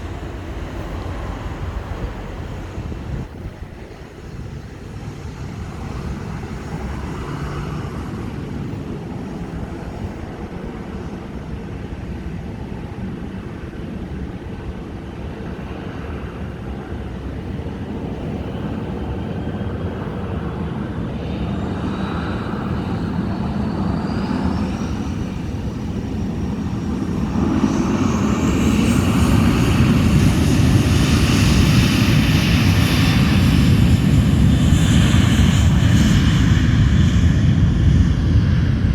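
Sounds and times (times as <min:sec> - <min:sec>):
jet engines spooling up: 0:20.1 - 0:38.9.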